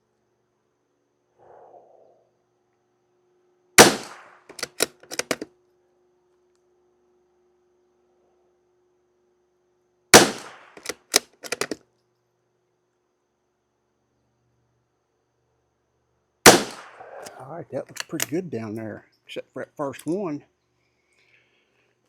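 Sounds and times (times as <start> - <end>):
rifle shots: 3.8 - 5.4, 10.2 - 11.8, 16.5 - 17.4
rifle bolt metallic clicks: 4.5 - 5.5, 10.8 - 11.8, 16.7 - 18.4.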